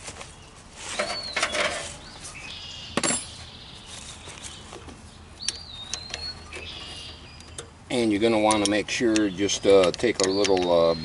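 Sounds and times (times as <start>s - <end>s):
wrench clinking on metal nuts: 7.4s - 11.0s.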